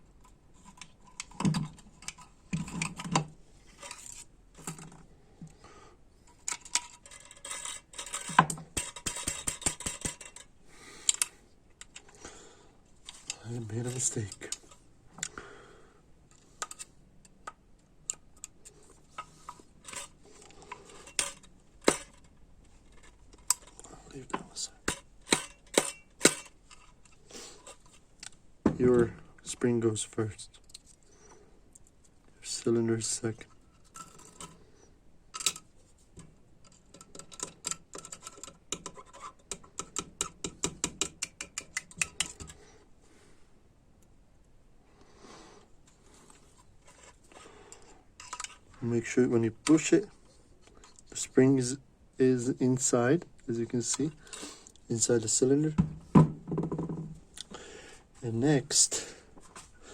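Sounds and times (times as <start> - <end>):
small metal parts clicking: 6.3 - 12.2, 16.3 - 28.3, 33.7 - 34.6, 35.3 - 35.7, 36.6 - 42.6, 47.7 - 48.7
light metallic clicks and taps: 36.2 - 42.6.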